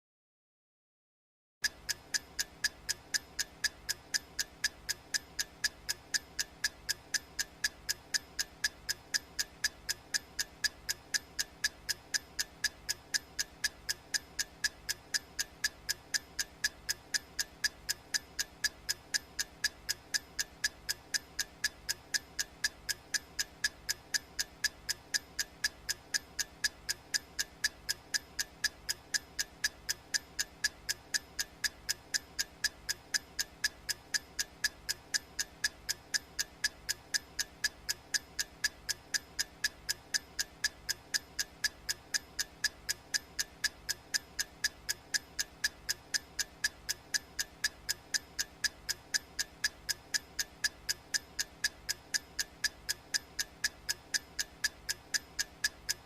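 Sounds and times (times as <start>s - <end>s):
clock ticking: 1.6s - 56.0s.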